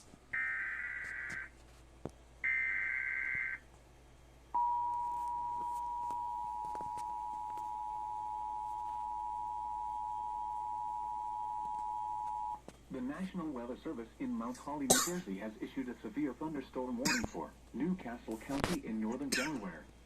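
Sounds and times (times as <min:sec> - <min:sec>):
two-tone attention signal: 0:04.6 - 0:12.6.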